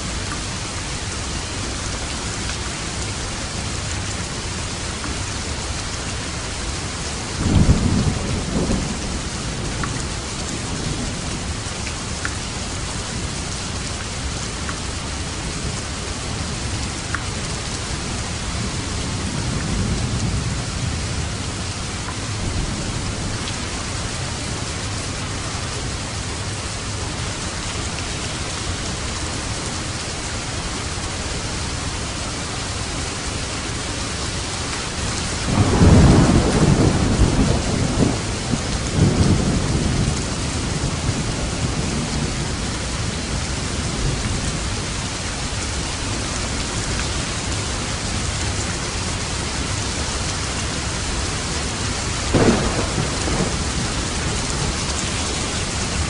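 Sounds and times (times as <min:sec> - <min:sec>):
heavy rain falling: 0:00.0 - 0:56.0
rolling thunder: 0:07.4 - 0:10.0, 0:35.4 - 0:44.6, 0:52.2 - 0:56.0
sharp thunderclap: 0:35.5 - 0:38.3, 0:52.3 - 0:54.9.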